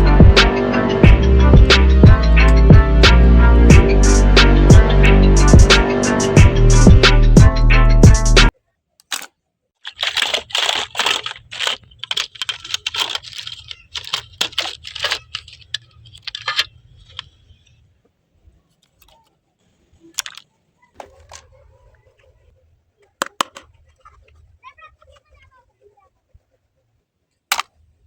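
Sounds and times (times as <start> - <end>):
sharp clicks taps and scrapes: 9.0 - 17.4.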